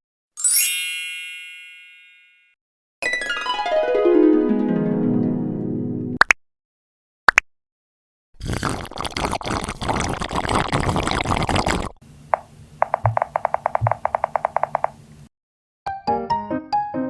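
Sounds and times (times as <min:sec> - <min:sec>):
fast run of pitched clicks: 0:12.3 - 0:15.0.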